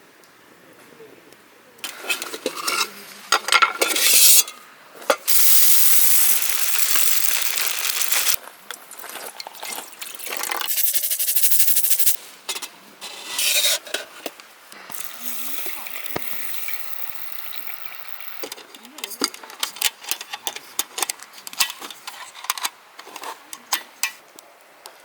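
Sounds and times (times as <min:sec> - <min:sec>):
steady hissing: 0:05.3 - 0:08.4, 0:10.2 - 0:12.2, 0:14.7 - 0:18.7.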